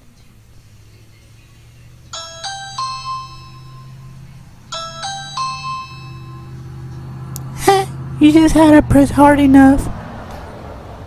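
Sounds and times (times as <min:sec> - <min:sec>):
rising electronic doorbell chime: 0:02.1 - 0:07.0.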